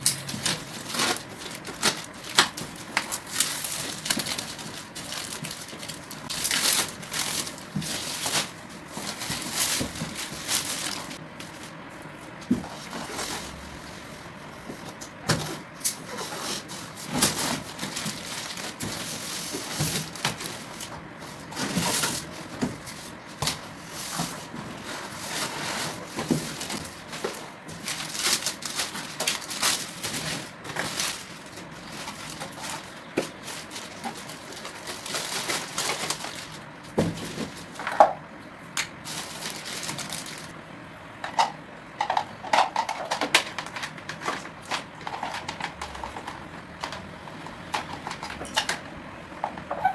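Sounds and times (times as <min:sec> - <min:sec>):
packaging clicks and knocks: 0:00.0 - 0:11.2
plastic wrap and cardboard rustling: 0:00.0 - 0:40.6, 0:42.5 - 0:48.8.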